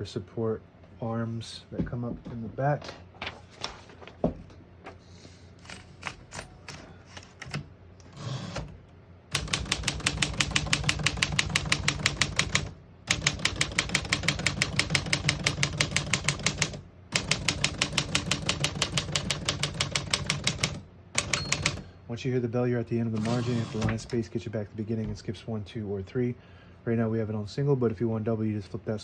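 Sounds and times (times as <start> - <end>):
typewriter keystrokes: 5.7 - 7.6, 9.3 - 21.8.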